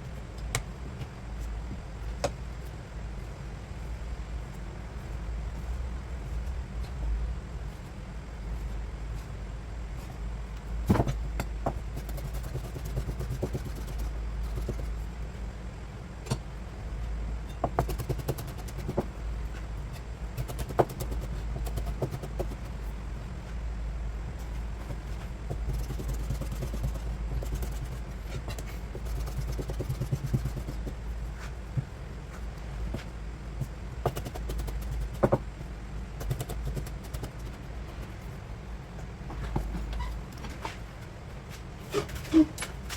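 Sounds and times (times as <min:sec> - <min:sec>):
steady low hum: 0:00.0 - 0:42.9
knife scraping on cutting board: 0:41.8 - 0:42.7.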